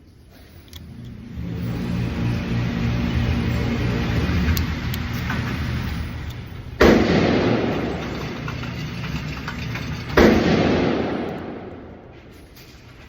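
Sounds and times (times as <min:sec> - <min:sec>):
gunshots with echoing decay: 0:06.8 - 0:08.1, 0:10.2 - 0:12.2.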